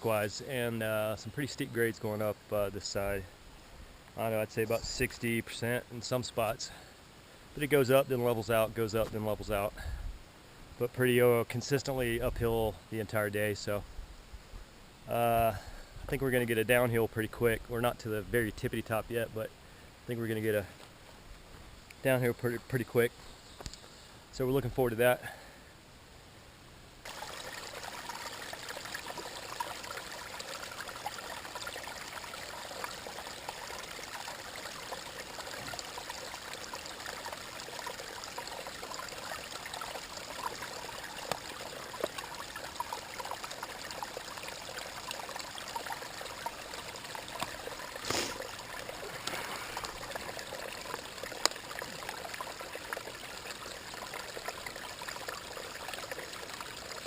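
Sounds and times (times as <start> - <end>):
stream trickling over rocks: 0.0 - 13.9, 15.0 - 21.1, 27.0 - 57.0.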